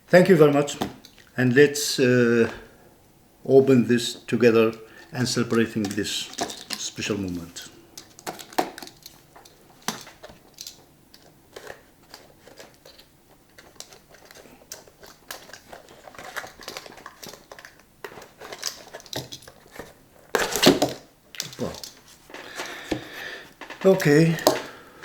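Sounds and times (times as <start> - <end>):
packaging crinkling and tearing: 5.0 - 24.8
small knocks and scrapes: 5.5 - 24.8.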